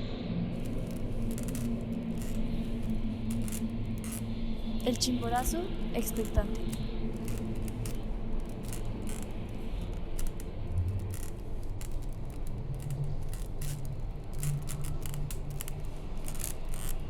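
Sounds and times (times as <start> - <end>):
low droning tones: 0.3 - 17.0
clicks and crackles: 0.6 - 17.0.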